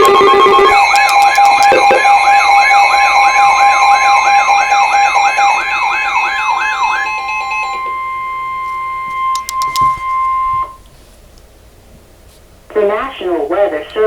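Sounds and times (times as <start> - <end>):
sharp clicks: 0.0 - 2.1, 9.3 - 9.9
fast warbling alert siren: 0.0 - 10.8
steady beeping tones: 0.0 - 10.8.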